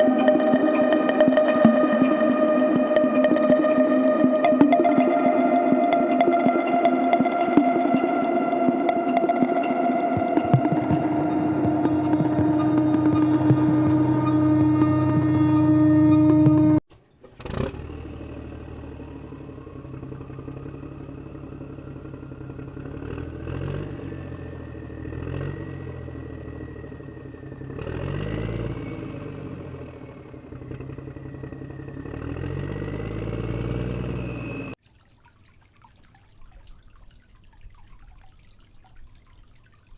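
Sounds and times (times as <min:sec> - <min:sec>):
thin rising whine: 0:00.0 - 0:16.8
faint dripping patter: 0:34.8 - 0:39.9.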